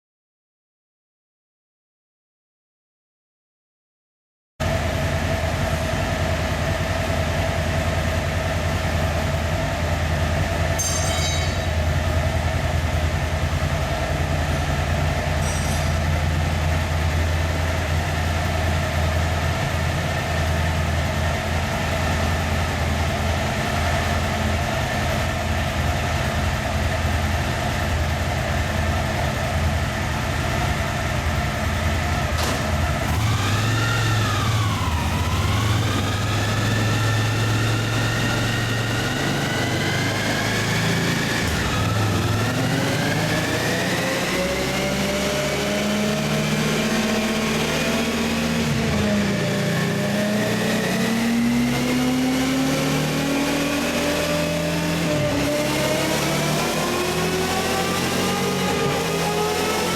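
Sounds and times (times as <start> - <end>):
motorcycle engine running: 4.6 - 45.5
rear wheel whine on roller: 4.6 - 59.9.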